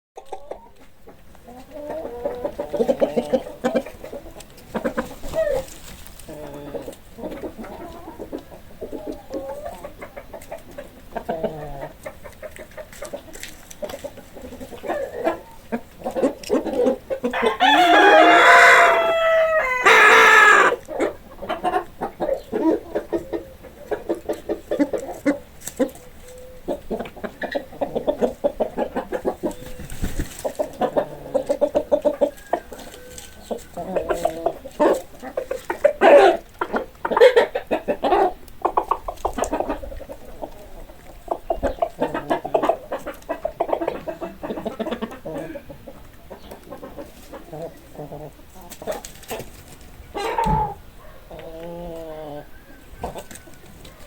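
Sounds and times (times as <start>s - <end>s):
chickens clucking: 0.2s - 54.0s
rooster crowing: 17.3s - 20.8s, 32.3s - 33.7s, 52.3s - 54.0s.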